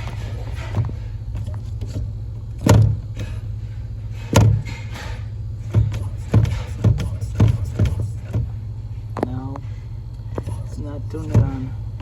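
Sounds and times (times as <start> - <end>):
brake pedal knocks: 0.0 - 3.4, 4.3 - 4.7
low hum inside car: 0.0 - 12.0.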